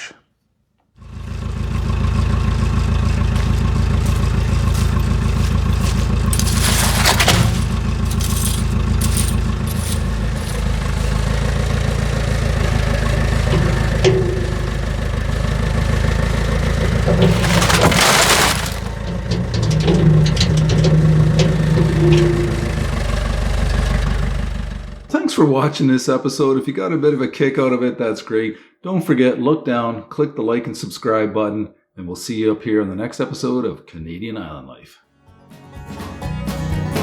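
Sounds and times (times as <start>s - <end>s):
engine running steadily: 1.1s - 25.1s.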